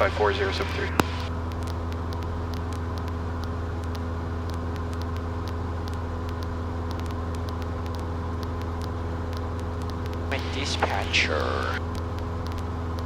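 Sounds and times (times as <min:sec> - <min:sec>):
airplane engine droning: 0:00.0 - 0:01.9, 0:10.2 - 0:11.8.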